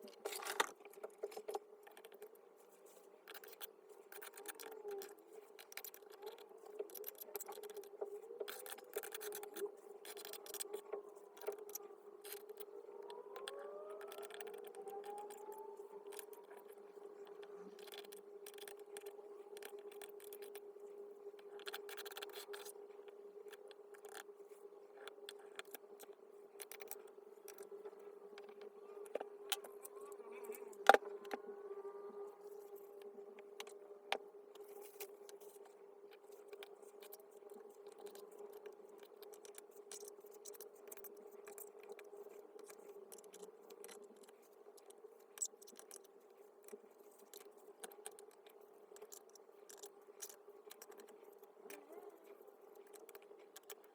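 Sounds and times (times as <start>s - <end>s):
steady hum: 4.9s - 43.6s.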